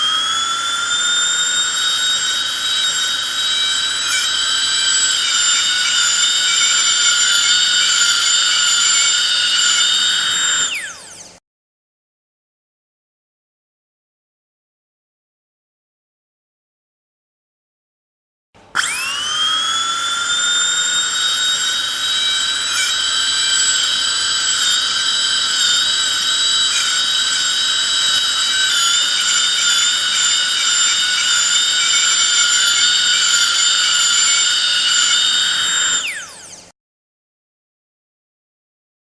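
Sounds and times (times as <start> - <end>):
dental drill whining: 0.0 - 11.4, 18.8 - 36.7.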